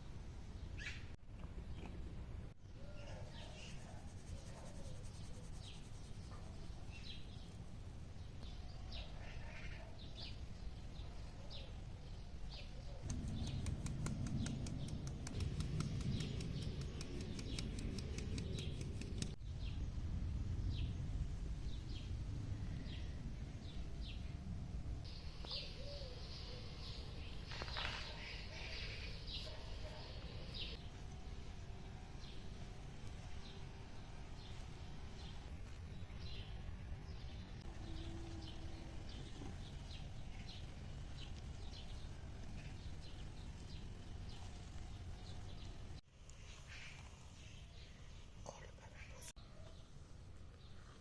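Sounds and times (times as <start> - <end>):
small birds chirping: 2.8 - 21.0, 25.0 - 51.0
rustling noise: 3.4 - 7.7, 27.3 - 28.4, 39.2 - 47.7
fast run of clicks: 13.0 - 19.4.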